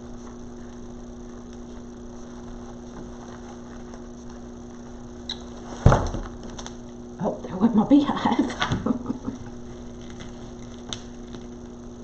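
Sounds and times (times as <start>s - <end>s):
electrical hum: 0.0s - 12.0s
decoration thumping down: 5.6s - 6.6s.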